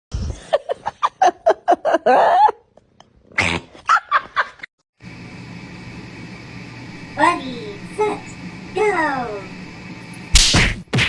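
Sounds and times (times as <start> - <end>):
steady low hum: 5.0 - 11.0.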